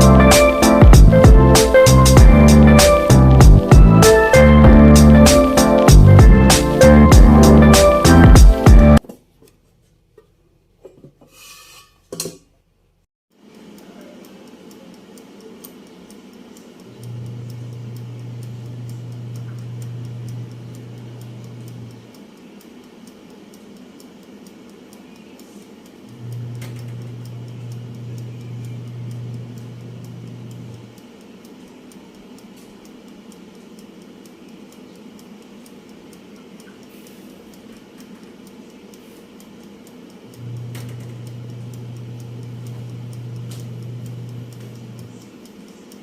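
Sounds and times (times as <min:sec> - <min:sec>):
air fryer fan running: 0:00.0 - 0:09.0, 0:13.4 - 0:46.0
faint dial timer ticking: 0:00.0 - 0:09.0, 0:13.3 - 0:46.0
low hum: 0:00.0 - 0:09.0
air fryer clicks: 0:39.7 - 0:46.0.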